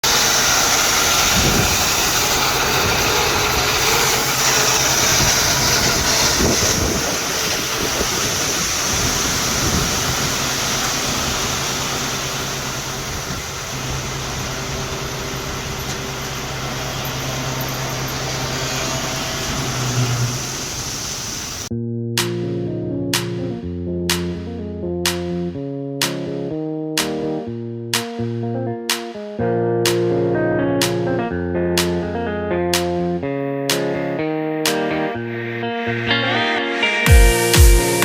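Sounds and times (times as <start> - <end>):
constant hiss: 0.0 - 21.7
engine running: 0.0 - 21.7.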